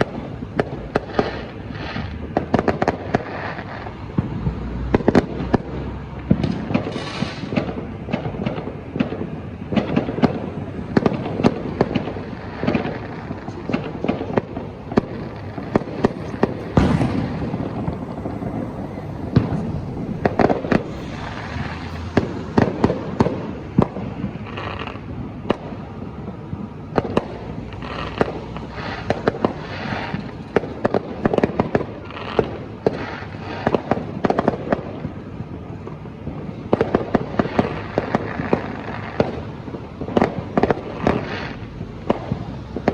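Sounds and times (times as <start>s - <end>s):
distant fireworks rumbling: 0.0s - 42.9s
fireworks crackling: 0.0s - 42.9s
fireworks cracks and bangs: 0.0s - 42.9s.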